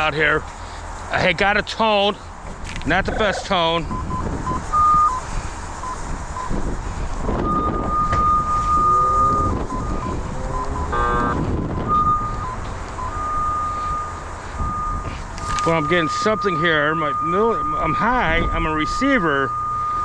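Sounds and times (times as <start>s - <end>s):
cable locator beeping: 4.0s - 5.2s, 7.4s - 20.0s.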